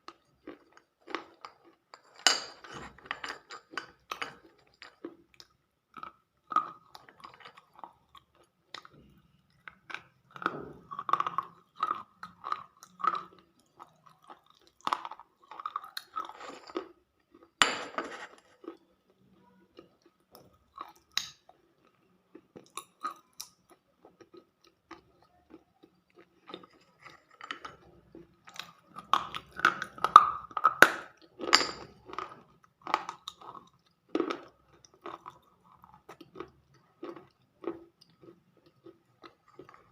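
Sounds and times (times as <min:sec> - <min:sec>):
person crunching food: 0:00.1 - 0:02.1, 0:09.6 - 0:39.9.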